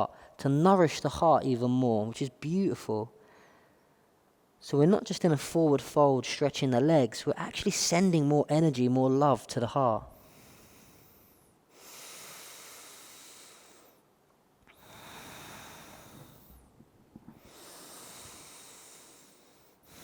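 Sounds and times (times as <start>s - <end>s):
person breathing through the nose: 10.1s - 14.0s, 14.7s - 16.7s, 17.3s - 20.0s.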